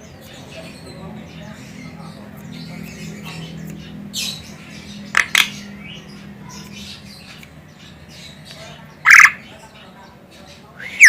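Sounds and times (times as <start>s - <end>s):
harsh bird chatter: 0.0s - 11.0s
bird squawking: 9.0s - 9.6s.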